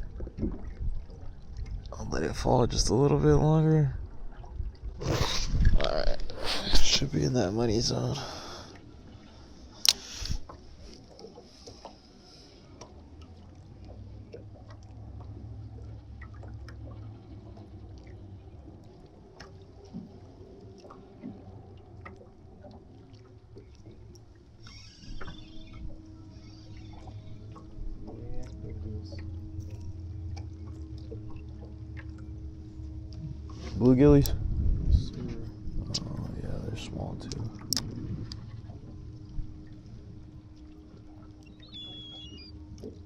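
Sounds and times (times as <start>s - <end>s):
low steady hum: 0.0s - 43.0s
waves lapping against boat hull: 0.0s - 43.0s
sharp click: 9.8s - 10.0s
higher steady hum: 25.3s - 43.0s.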